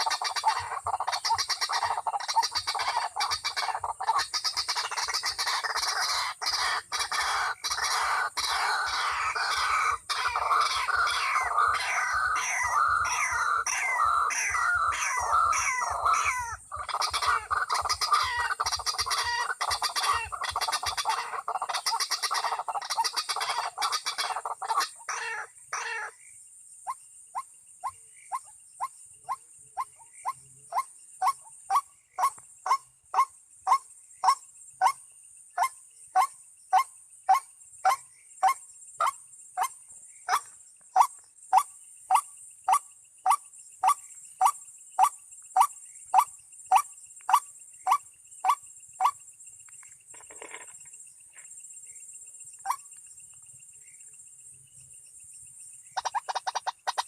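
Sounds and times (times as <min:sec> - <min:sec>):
waterhen calling: 0:00.0 - 0:26.1, 0:56.0 - 0:57.0.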